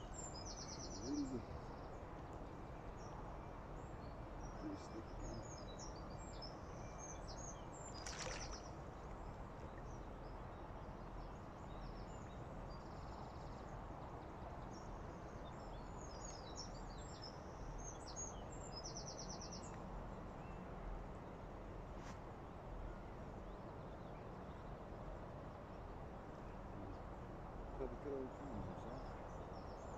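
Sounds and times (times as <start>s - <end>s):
small birds chirping: 0.0s - 3.2s, 3.8s - 13.7s
outdoor background hiss: 0.0s - 29.9s.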